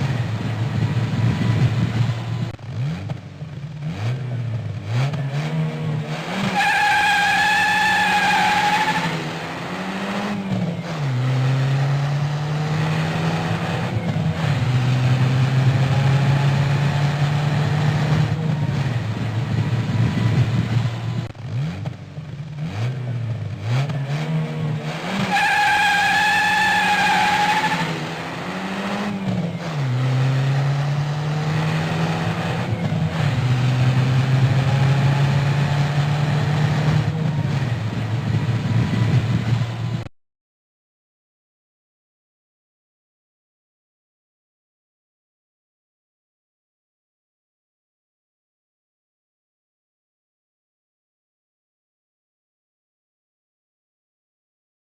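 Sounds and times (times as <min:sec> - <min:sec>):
car engine revving: 0:00.0 - 0:40.1
tyre squeal: 0:06.4 - 0:09.2, 0:25.2 - 0:28.1.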